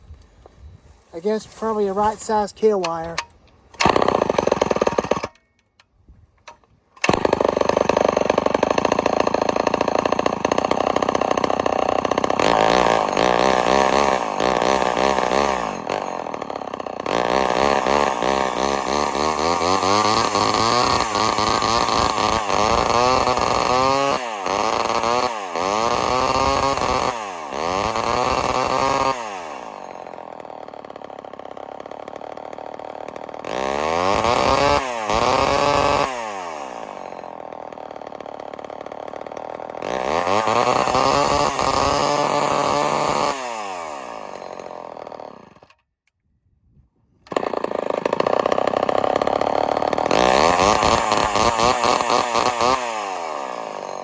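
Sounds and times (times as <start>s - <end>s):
chainsaw engine revving: 3.8s - 5.4s, 7.0s - 45.8s, 47.3s - 54.0s.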